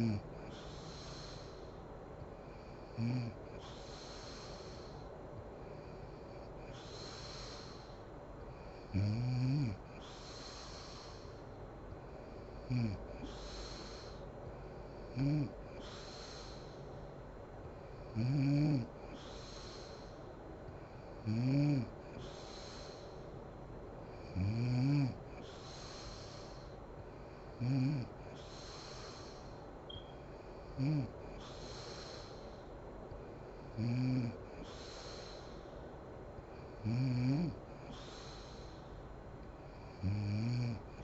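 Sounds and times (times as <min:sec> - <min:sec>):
loud low snore: 0:00.0 - 0:00.2, 0:03.0 - 0:03.4, 0:08.9 - 0:09.8, 0:12.6 - 0:13.3, 0:15.1 - 0:15.6, 0:18.1 - 0:18.9, 0:21.2 - 0:21.9, 0:24.2 - 0:25.2, 0:27.6 - 0:28.1, 0:30.7 - 0:31.5, 0:33.7 - 0:34.4, 0:36.8 - 0:38.0, 0:39.9 - 0:41.0
woman breathing softly: 0:00.0 - 0:41.0.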